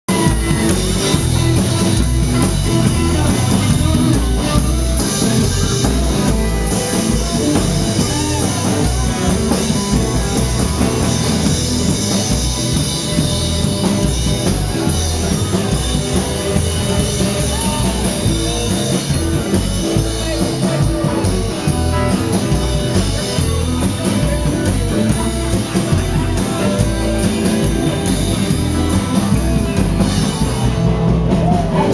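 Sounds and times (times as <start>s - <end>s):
loud rock music: 0.0s - 31.9s
person singing: 13.1s - 31.9s.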